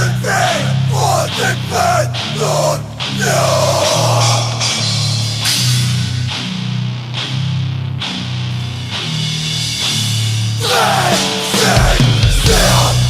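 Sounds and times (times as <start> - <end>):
distorted electric guitars chugging: 0.0 - 13.0
cymbal crashes: 3.9 - 6.7
drum kit: 8.9 - 13.0.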